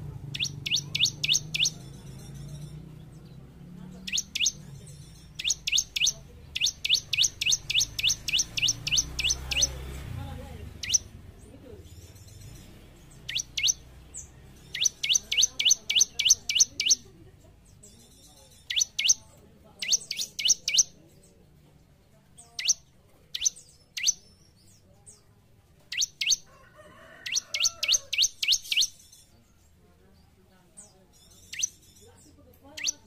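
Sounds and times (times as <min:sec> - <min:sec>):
bird chirping sharply: 0:00.2 - 0:03.4, 0:04.0 - 0:09.9, 0:10.7 - 0:11.2, 0:11.9 - 0:17.1, 0:17.9 - 0:21.0, 0:22.4 - 0:25.2, 0:25.9 - 0:26.5, 0:27.2 - 0:29.3, 0:31.1 - 0:32.1, 0:32.7 - 0:33.0.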